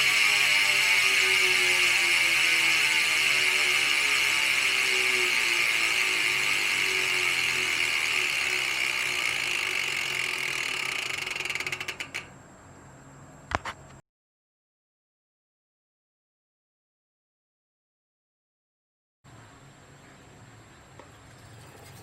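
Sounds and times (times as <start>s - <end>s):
bicycle hub ratchet clicking: 0.0s - 12.4s.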